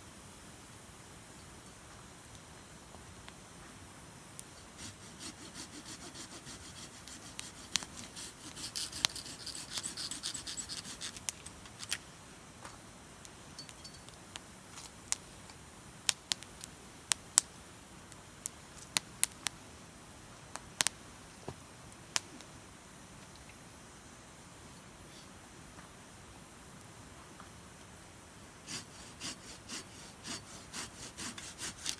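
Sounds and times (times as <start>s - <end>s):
rhythmic rubbing rasping: 4.6s - 11.2s, 28.7s - 31.9s
firewood crackling and popping: 13.2s - 19.6s, 20.5s - 21.0s.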